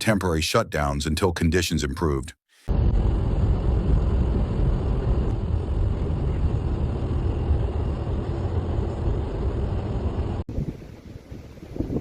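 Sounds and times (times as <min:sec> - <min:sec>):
vehicle driving rumble: 0:02.7 - 0:10.5.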